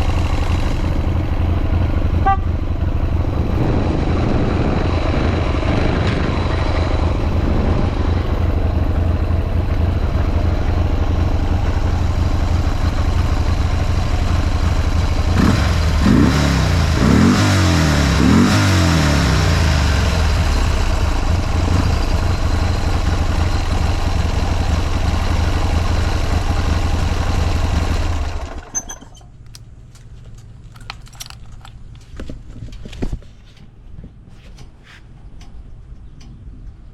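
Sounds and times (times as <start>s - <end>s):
motorcycle engine idling: 0.0s - 18.3s, 19.0s - 32.0s
motorcycle engine revving: 0.0s - 28.8s.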